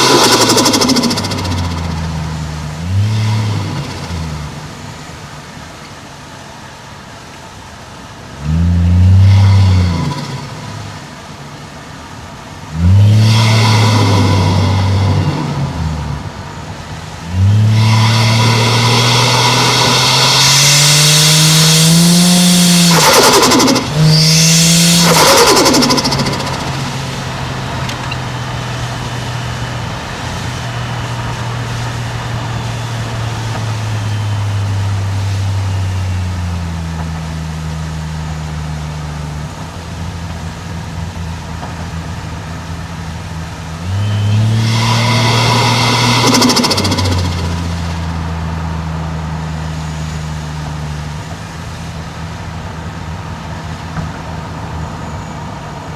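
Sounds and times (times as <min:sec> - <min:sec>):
turbo flutter: 0:00.0 - 0:05.8, 0:12.8 - 0:36.0, 0:44.0 - 0:48.5
turbo hissing bursts: 0:00.0 - 0:06.6, 0:08.4 - 0:39.4, 0:43.5 - 0:51.9
car engine revving: 0:00.0 - 0:55.9.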